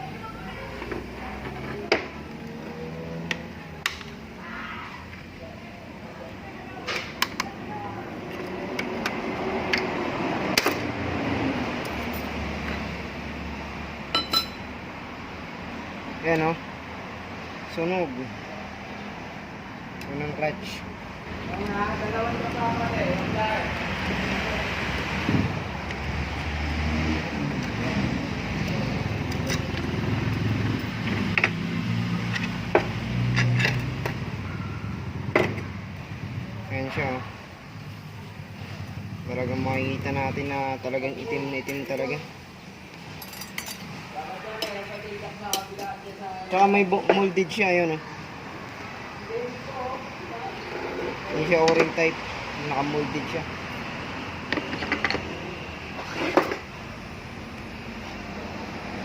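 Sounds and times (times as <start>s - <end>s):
metal parts clinking: 43.2s - 43.9s.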